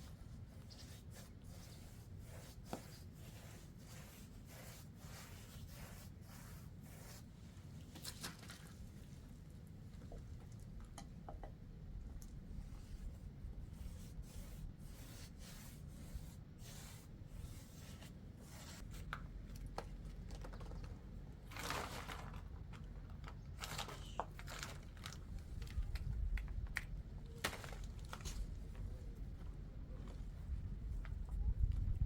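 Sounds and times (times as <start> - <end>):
rustling and crinkling handling noise: 18.8 - 31.9.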